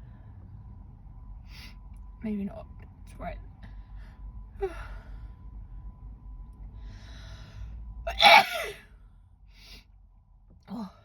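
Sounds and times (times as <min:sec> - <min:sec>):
woman breathing in: 0:03.6 - 0:05.5, 0:06.7 - 0:07.9
woman sneezing: 0:08.1 - 0:08.8.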